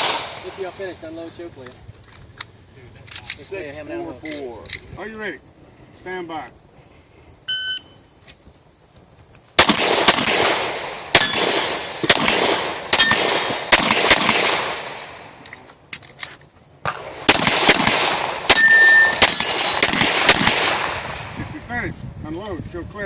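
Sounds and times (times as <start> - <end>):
rapid pistol shots with echo: 0.0 - 0.6, 9.6 - 15.2, 16.8 - 21.3
shot timer beep: 7.5 - 8.0.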